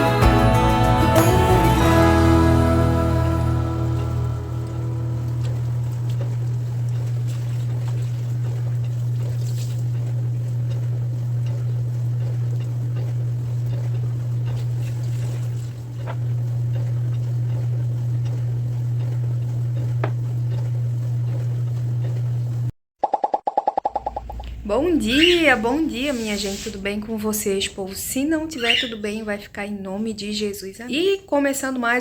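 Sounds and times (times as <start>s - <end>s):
low hum: 0.0s - 21.7s, 23.9s - 27.2s.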